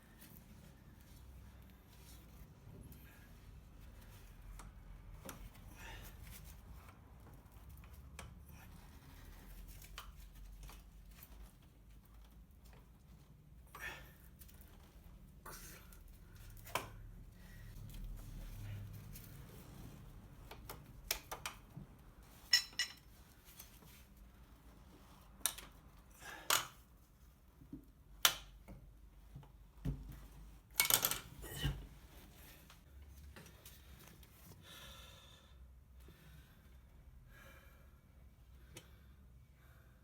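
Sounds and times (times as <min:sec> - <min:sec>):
metal tools clinking on workbench: 0:22.4 - 0:23.1.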